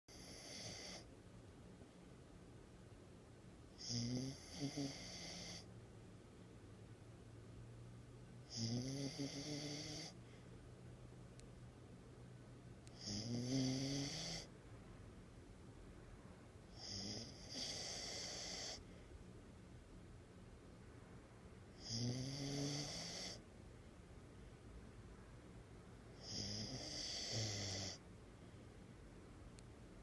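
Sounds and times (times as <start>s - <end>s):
puppy snoring: 0.1s - 1.1s, 3.8s - 5.7s, 8.4s - 10.2s, 12.9s - 14.5s, 16.7s - 18.8s, 21.7s - 23.4s, 26.2s - 28.0s.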